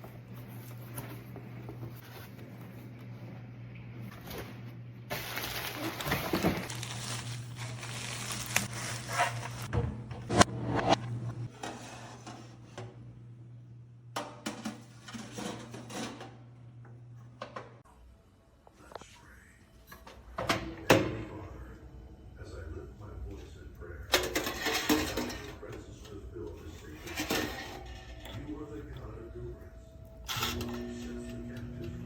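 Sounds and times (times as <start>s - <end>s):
oven low hum: 0.0s - 32.0s
clattering and rustling: 24.1s - 25.8s.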